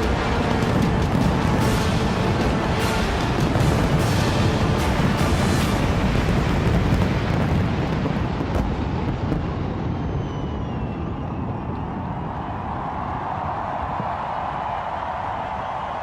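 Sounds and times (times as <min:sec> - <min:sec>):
fireworks booming and crackling: 0:00.0 - 0:11.9.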